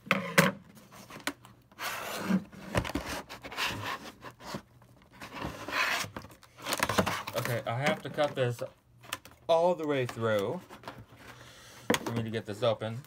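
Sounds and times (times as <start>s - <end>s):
plastic packaging rustling: 4.4s - 11.4s.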